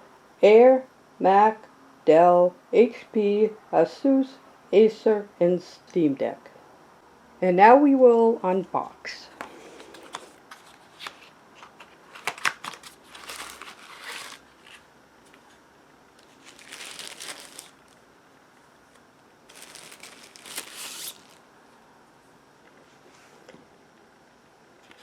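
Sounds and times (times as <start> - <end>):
packaging crinkling and tearing: 10.0 - 14.8, 16.2 - 18.0, 19.5 - 21.4.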